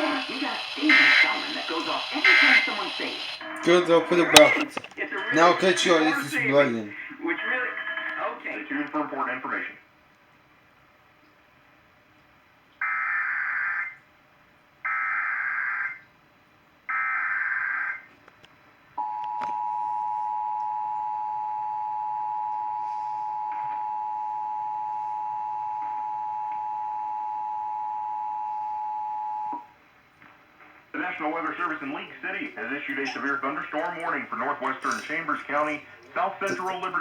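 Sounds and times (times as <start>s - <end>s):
digital data bursts: 0.0s - 6.8s.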